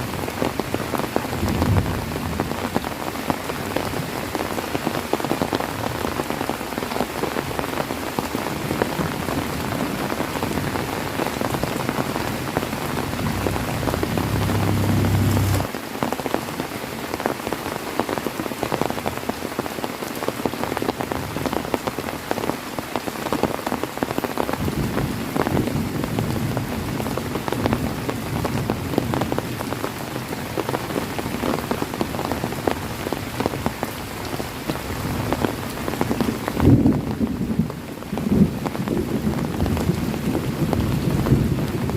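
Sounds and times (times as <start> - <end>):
heavy rain falling: 0.0 - 41.9
low rumble: 12.2 - 15.7.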